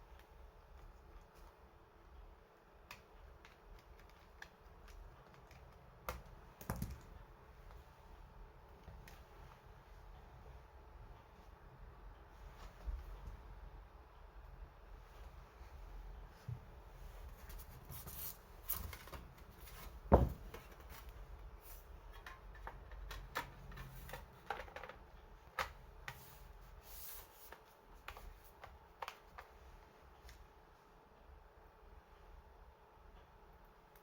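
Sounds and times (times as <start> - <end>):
clicks and taps of plastic parts: 22.1 - 26.2.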